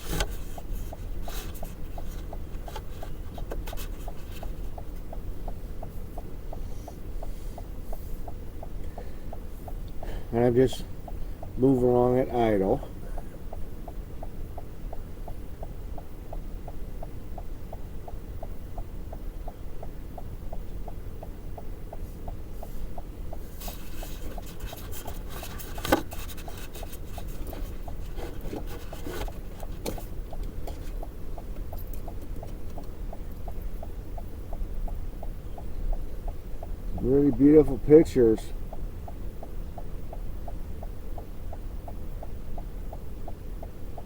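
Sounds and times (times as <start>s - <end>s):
vehicle idling from inside cabin: 0.0s - 44.0s
faint even ticking: 3.6s - 44.0s
rustling and clicking: 23.6s - 33.0s.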